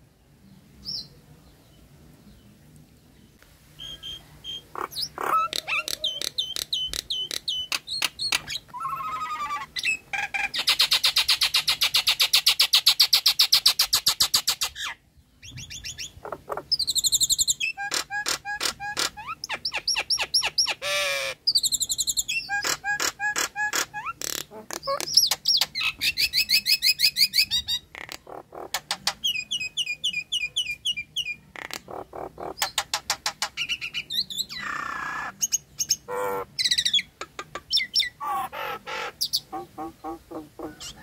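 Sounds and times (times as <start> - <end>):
myna whistling and calling: 3.8 - 13.4.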